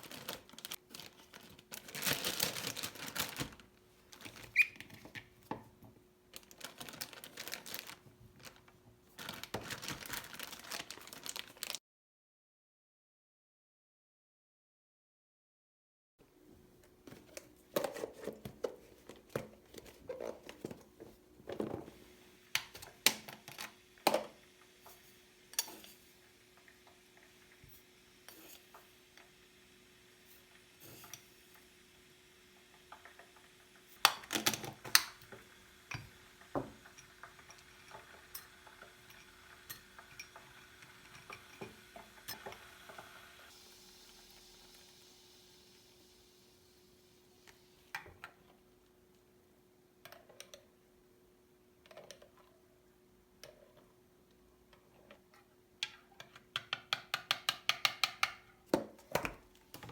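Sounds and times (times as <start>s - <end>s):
dishes and utensils clinking: 24.9s - 26.1s.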